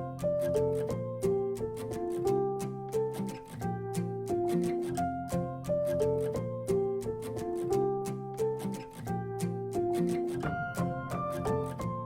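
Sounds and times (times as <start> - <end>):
melody of held notes: 0.0 - 12.0.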